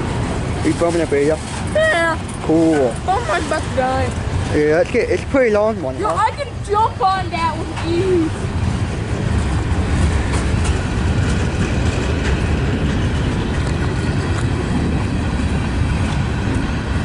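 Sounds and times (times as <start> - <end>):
freight train rumbling: 0.0 - 17.0
train wheel clicks: 8.6 - 16.8.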